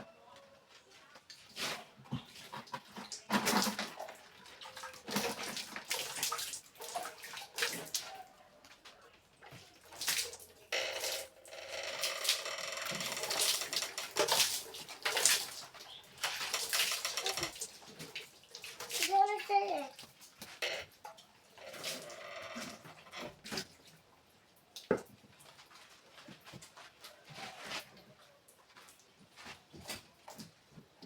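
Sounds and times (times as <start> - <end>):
items knocking and clattering: 2.0 - 4.2, 10.8 - 18.2
water splashing: 2.8 - 8.2, 9.6 - 23.9
running water: 9.3 - 26.3.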